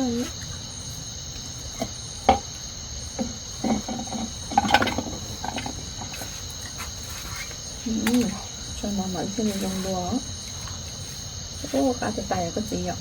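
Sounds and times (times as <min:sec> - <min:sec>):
crickets chirping: 0:00.0 - 0:13.0
knocks and clatters: 0:03.2 - 0:06.4.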